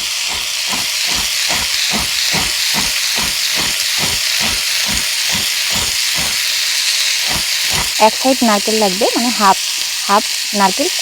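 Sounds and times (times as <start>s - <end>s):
coconut grating strokes: 0.0s - 8.6s.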